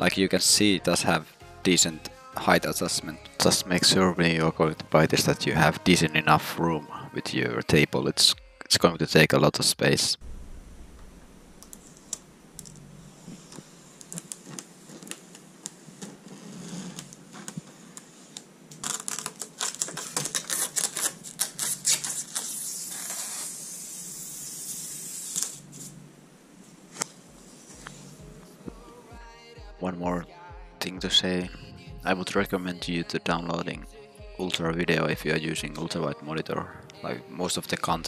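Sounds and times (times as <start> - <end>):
soft hiss: 10.2 - 29.2.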